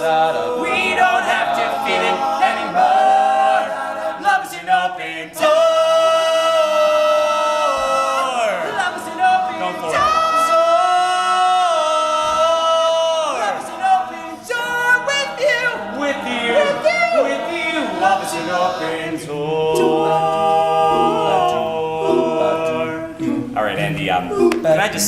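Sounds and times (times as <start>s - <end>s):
male a cappella group singing: 0.0s - 25.0s.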